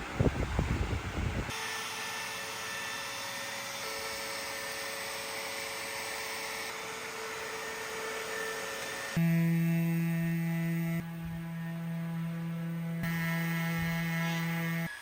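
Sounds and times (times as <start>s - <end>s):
machine whirring with faint whine: 0.0s - 15.0s.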